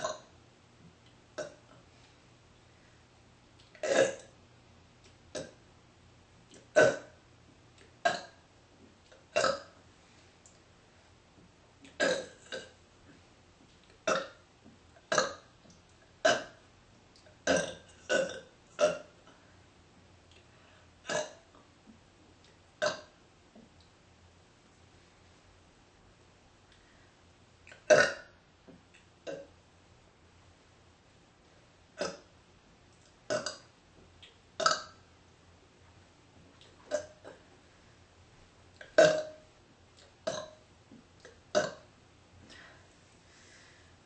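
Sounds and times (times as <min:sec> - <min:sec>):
woman burping: 0:01.4 - 0:01.7, 0:03.8 - 0:04.3, 0:05.3 - 0:05.6, 0:06.7 - 0:07.2, 0:08.0 - 0:08.4, 0:09.3 - 0:09.8, 0:12.0 - 0:12.8, 0:14.0 - 0:14.4, 0:15.1 - 0:15.4, 0:16.2 - 0:16.6, 0:17.4 - 0:19.1, 0:21.0 - 0:21.4, 0:27.7 - 0:28.3, 0:29.2 - 0:29.5, 0:32.0 - 0:32.3, 0:33.3 - 0:33.6, 0:34.6 - 0:35.0, 0:36.9 - 0:37.4, 0:38.8 - 0:39.4, 0:40.2 - 0:40.6, 0:41.5 - 0:41.8.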